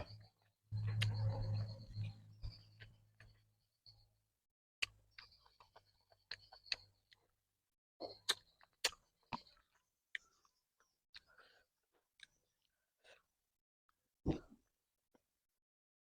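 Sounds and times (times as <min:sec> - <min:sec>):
faint low hum: 0:00.0 - 0:03.4
chewing clicks and wet smacks: 0:04.8 - 0:07.4, 0:08.0 - 0:13.3.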